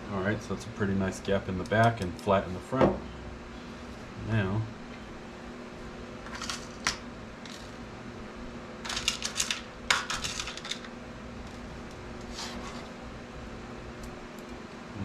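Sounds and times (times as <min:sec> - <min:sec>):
small metal parts clinking: 0:06.3 - 0:07.7, 0:08.8 - 0:10.9.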